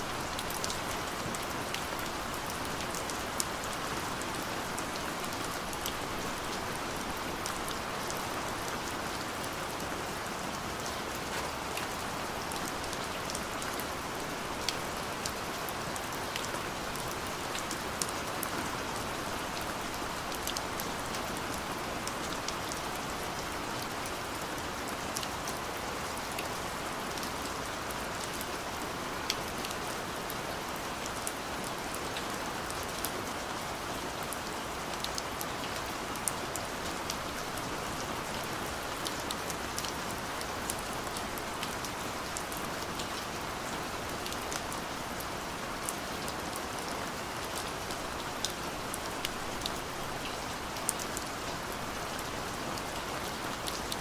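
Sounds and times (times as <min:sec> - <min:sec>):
steady rainfall hiss: 0:00.0 - 0:54.0.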